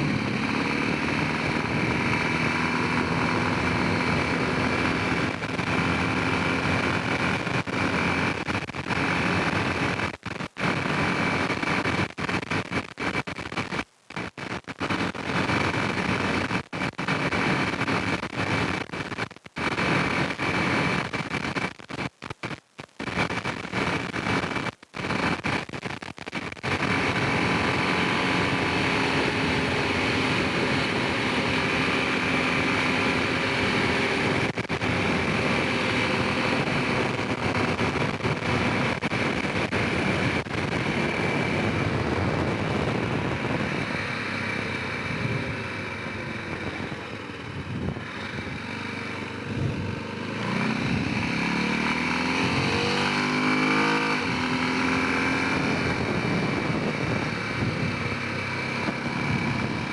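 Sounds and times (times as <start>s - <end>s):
atv engine running: 0.0s - 10.0s, 10.7s - 11.8s, 19.7s - 21.0s, 26.6s - 59.9s.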